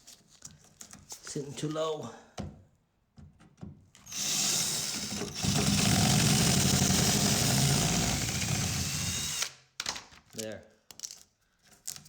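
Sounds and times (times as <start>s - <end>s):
power drill running: 4.1s - 9.5s.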